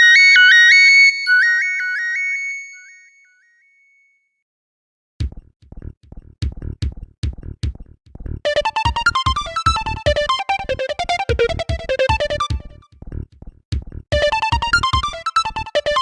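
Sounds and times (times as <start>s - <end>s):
electronic drum beat: 5.2s - 16.0s
synthesized ringtone melody: 8.5s - 12.8s, 14.1s - 16.0s.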